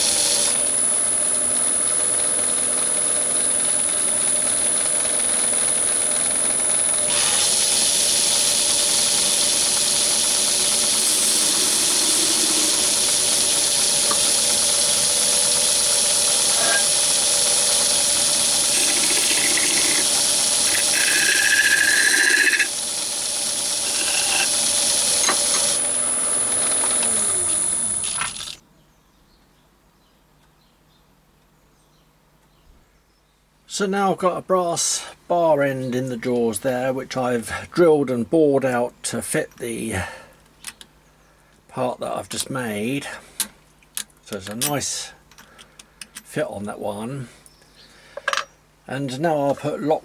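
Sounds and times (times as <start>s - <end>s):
cutting tool squealing: 0.0s - 28.6s
metal lathe whining: 0.0s - 28.6s
tool cutting brass hissing: 0.0s - 28.6s.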